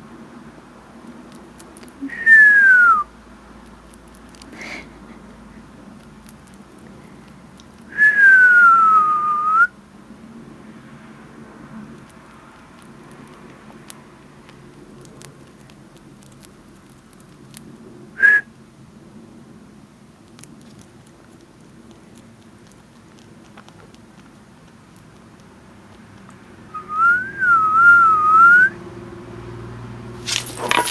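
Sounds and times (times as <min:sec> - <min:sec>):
rabbit chewing hay: 0:00.0 - 0:02.1, 0:03.3 - 0:08.0, 0:10.3 - 0:18.1, 0:18.8 - 0:26.7, 0:30.1 - 0:30.9
short loud whistle: 0:18.2 - 0:18.5.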